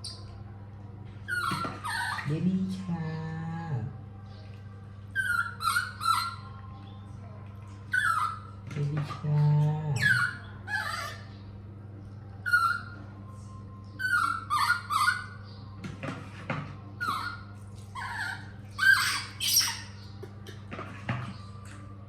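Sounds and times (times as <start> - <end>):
baby monkey squeaking: 1.3 - 2.4, 5.1 - 6.5, 7.9 - 8.6, 10.0 - 11.3, 12.4 - 13.0, 14.0 - 15.4, 17.0 - 20.1.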